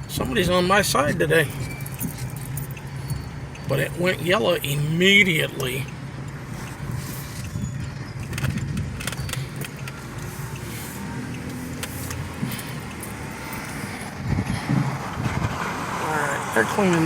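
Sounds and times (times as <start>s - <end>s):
car engine and road noise: 0.0s - 17.0s.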